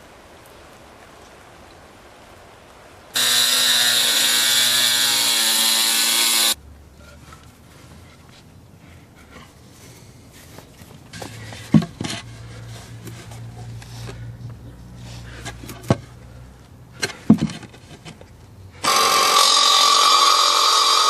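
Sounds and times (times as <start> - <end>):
power tool running at high speed: 3.2 - 6.6, 18.8 - 21.0.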